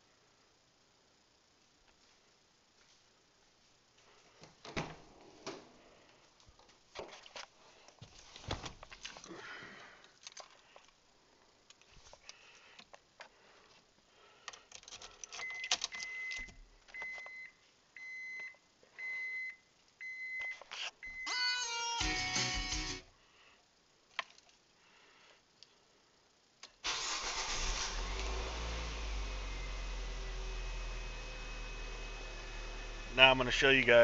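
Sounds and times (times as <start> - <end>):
keys jangling: 14.7 - 15.9.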